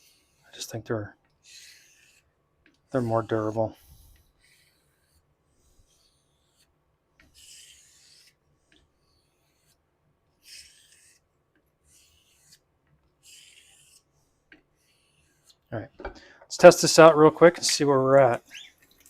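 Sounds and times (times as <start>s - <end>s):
razor blade stroked on whetstone: 1.4s - 2.3s, 2.9s - 9.8s, 10.4s - 11.3s, 11.9s - 15.6s.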